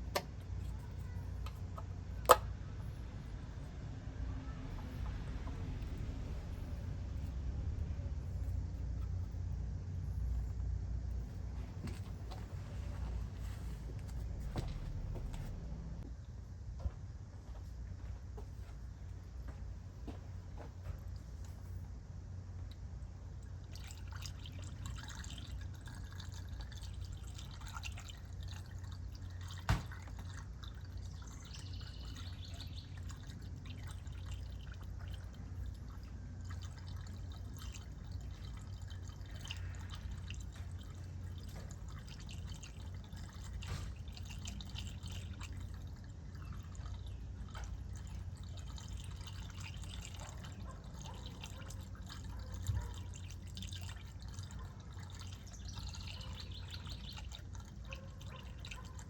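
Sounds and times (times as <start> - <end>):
low steady hum: 0.0 - 59.0
liquid dripping: 22.6 - 59.0.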